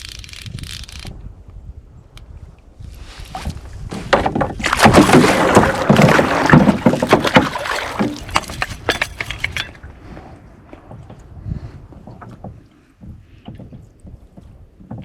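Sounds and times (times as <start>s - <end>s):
knocks against canoe: 3.4s - 9.7s
fish splashing in water: 4.6s - 8.9s.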